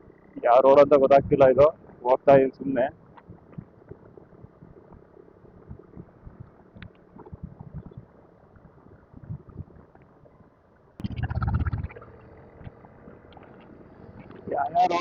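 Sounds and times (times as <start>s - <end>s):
muffled motorcycle: 0.0s - 15.0s
wind buffeting microphone: 0.7s - 15.0s
low thumps: 11.0s - 13.3s.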